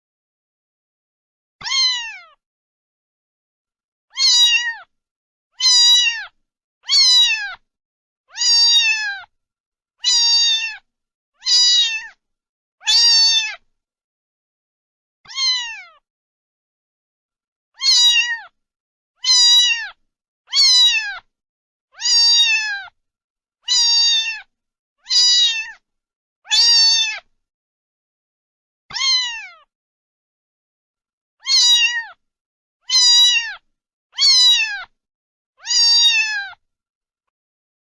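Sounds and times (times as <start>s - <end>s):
cat meowing: 1.6s - 2.4s, 4.1s - 4.9s, 5.6s - 7.6s, 8.3s - 9.3s, 10.0s - 12.2s, 12.8s - 13.6s, 15.3s - 16.0s, 17.8s - 18.6s, 19.2s - 21.3s, 22.0s - 23.0s, 23.6s - 25.8s, 26.5s - 27.3s, 28.9s - 29.7s, 31.4s - 32.2s, 32.8s - 35.0s, 35.6s - 36.6s.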